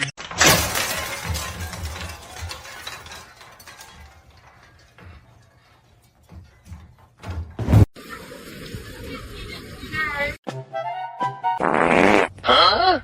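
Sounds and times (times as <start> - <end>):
fast rattling clatter: 0.3 - 7.2.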